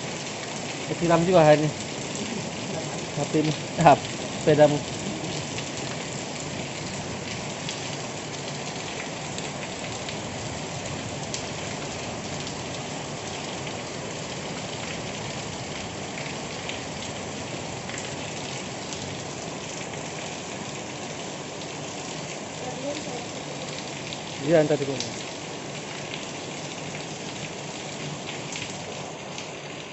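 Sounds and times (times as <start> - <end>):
heavy rain: 0.0 - 29.9
raindrop ticks: 0.2 - 17.2, 22.6 - 25.4.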